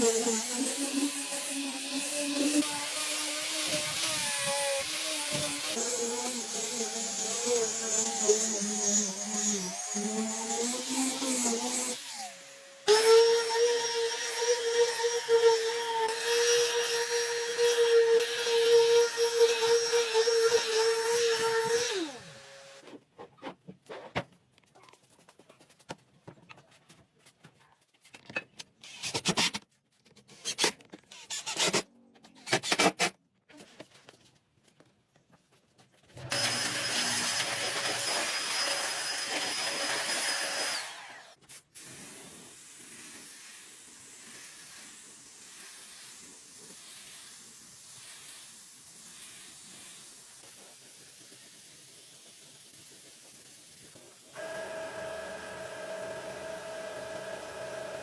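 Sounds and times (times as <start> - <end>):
power tool high whine: 36.2 - 41.4, 54.4 - 58.0
power tool spinning down: 36.2 - 41.4, 54.4 - 58.0.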